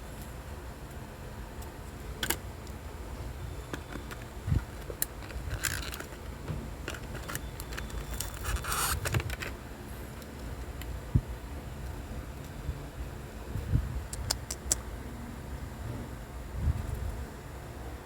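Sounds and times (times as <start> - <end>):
packaging clicks: 3.7 - 9.6
packaging scraping rustles: 3.8 - 9.6.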